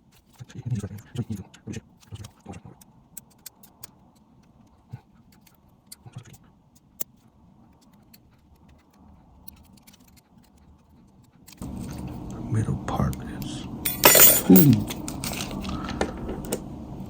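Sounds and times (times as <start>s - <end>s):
small tools and phone parts clicking: 2.8s - 12.2s.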